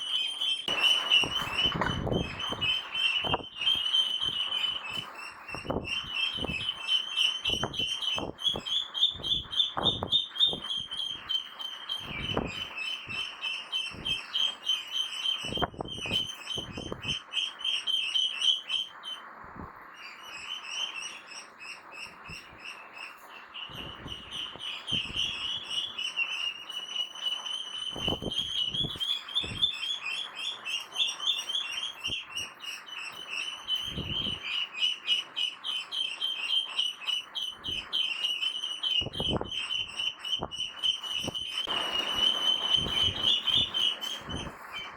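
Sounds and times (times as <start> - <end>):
ducklings peeping: 0.6 - 17.2, 38.8 - 44.9.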